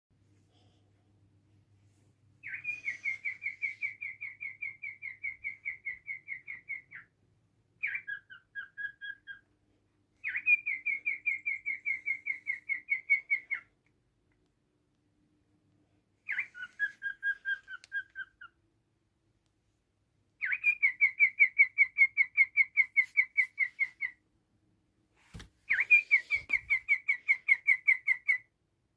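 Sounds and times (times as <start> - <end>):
pet bird whistling: 2.4 - 7.1, 7.8 - 9.5, 10.2 - 13.7, 16.2 - 18.6, 20.4 - 24.2, 25.7 - 28.5.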